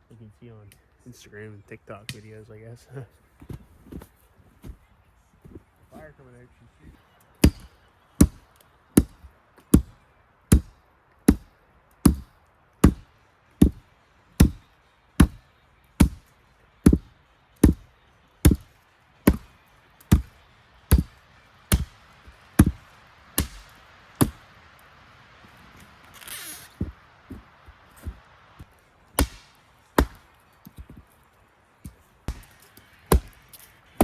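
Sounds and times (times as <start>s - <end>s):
axe chopping firewood: 7.4s - 15.4s, 16.0s - 24.8s, 25.8s - 31.1s, 31.8s - 34.0s.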